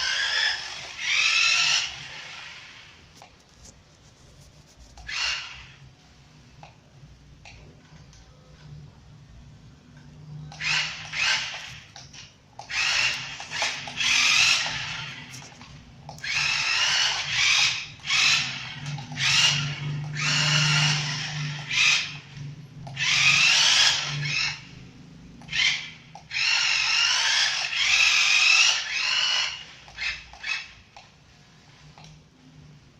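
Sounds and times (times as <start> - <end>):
toy car motor whirring: 0.0 - 5.8, 10.0 - 32.6.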